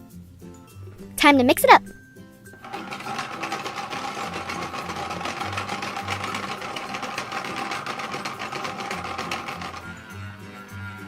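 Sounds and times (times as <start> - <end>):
background music: 0.0 - 11.0
toy blender motor whirring: 2.6 - 11.0.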